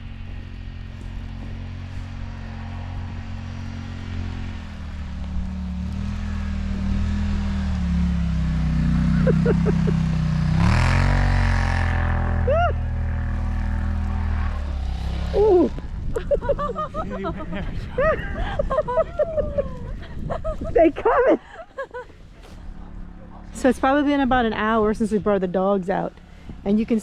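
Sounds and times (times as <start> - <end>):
vehicle engine revving: 0.0 - 19.0, 22.3 - 27.0
people calling out: 12.5 - 12.9, 16.7 - 20.0.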